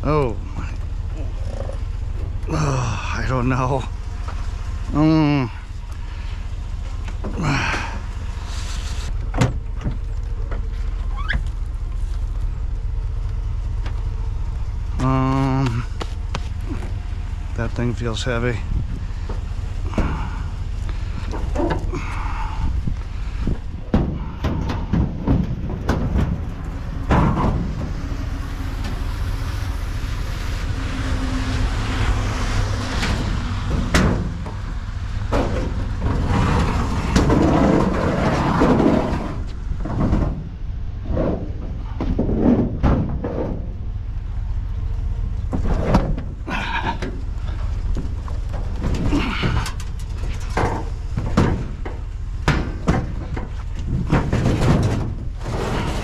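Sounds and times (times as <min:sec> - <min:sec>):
steady low rumble: 0:00.0 - 0:56.0
heavy metal knocks and clunks: 0:09.2 - 0:11.6, 0:14.9 - 0:29.0, 0:32.2 - 0:56.0.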